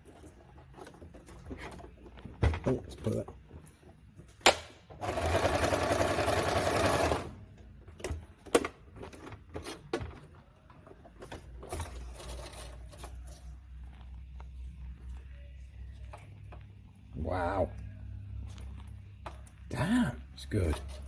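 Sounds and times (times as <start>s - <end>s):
sewing machine stitching fast: 5.0s - 7.4s.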